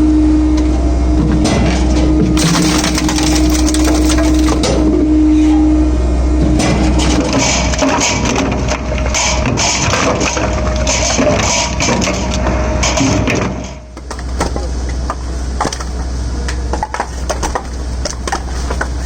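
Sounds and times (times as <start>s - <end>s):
wood crackling and splitting: 2.4s - 4.8s
wood knocks and clatter: 2.4s - 4.8s.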